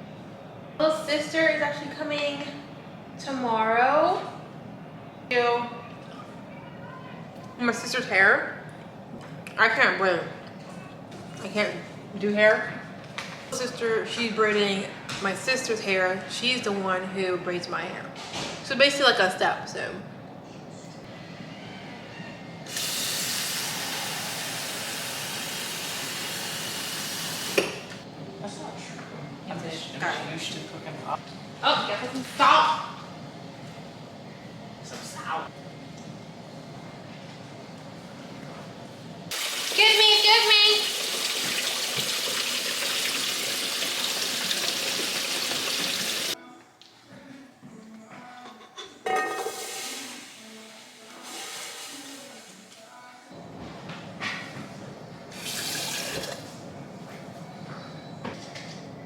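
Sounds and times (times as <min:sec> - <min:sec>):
tap water running: 0:22.7 - 0:28.0, 0:39.3 - 0:46.4, 0:55.3 - 0:56.5.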